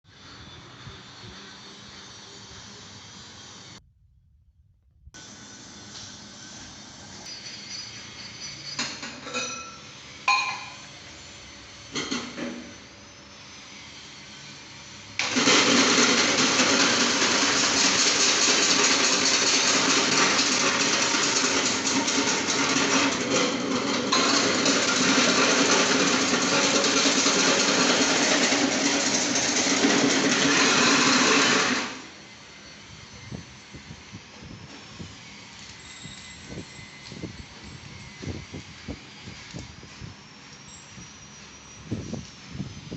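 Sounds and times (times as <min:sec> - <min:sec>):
vegetable slicing machine whirring: 0:15.0 - 0:35.8.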